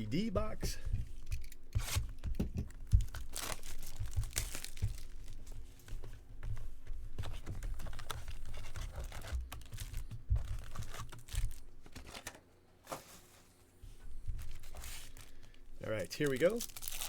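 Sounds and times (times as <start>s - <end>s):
taps and knocks on box: 0.7s - 5.2s
plastic wrap crinkling and tearing: 2.9s - 5.6s, 7.6s - 12.4s, 14.3s - 17.0s.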